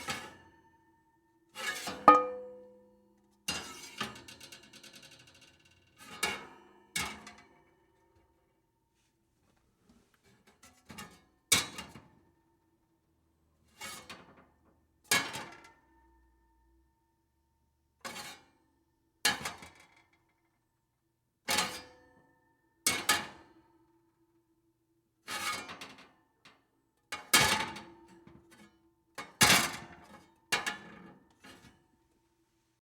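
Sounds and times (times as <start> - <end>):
metal oven pans clanking: 2.1 - 2.6.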